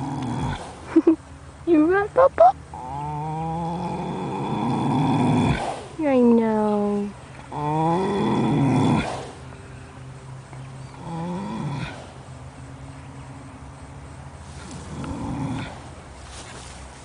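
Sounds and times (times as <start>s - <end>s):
horse snoring: 0.0s - 0.9s, 2.7s - 6.0s, 7.5s - 9.6s, 10.9s - 12.2s, 14.6s - 16.0s.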